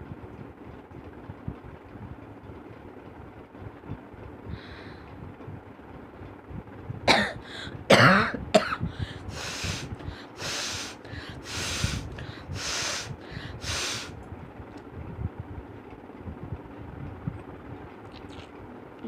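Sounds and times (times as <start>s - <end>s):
person coughing: 7.1s - 8.9s
person blowing nose: 9.3s - 14.1s.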